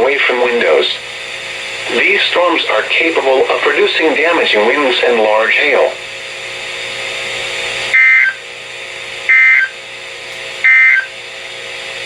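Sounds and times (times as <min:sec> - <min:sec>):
radio hiss and hum: 0:00.0 - 0:12.0
digital data tone bursts: 0:07.9 - 0:08.4, 0:09.3 - 0:09.8, 0:10.6 - 0:11.1.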